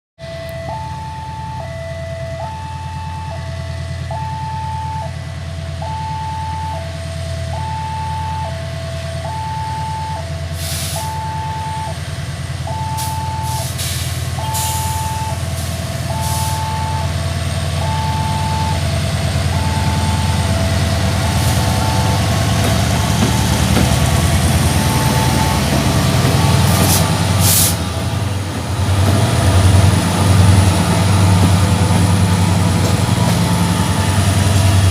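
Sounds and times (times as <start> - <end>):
level crossing alarm: 0.2 - 12.0, 12.6 - 13.8, 14.4 - 27.4
locomotive diesel rumble: 0.2 - 34.9.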